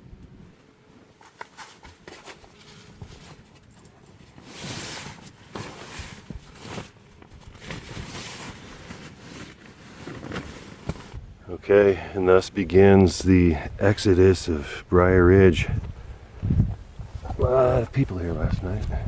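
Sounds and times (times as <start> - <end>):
camping gear rustling: 0.6 - 11.4.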